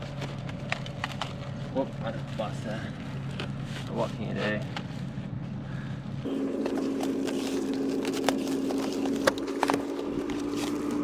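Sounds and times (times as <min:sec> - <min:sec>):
vehicle engine idling: 0:06.2 - 0:11.0.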